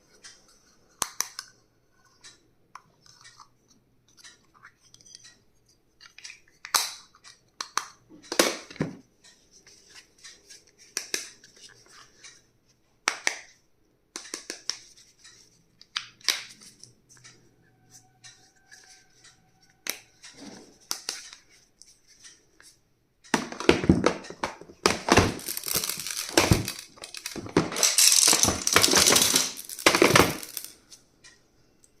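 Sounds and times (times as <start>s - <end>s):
packaging crinkling and rustling: 23.5s - 30.7s.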